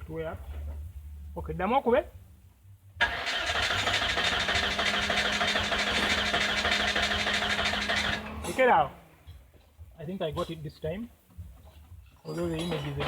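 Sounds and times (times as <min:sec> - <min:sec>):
car engine starting and running: 0:02.9 - 0:10.6, 0:12.7 - 0:13.0.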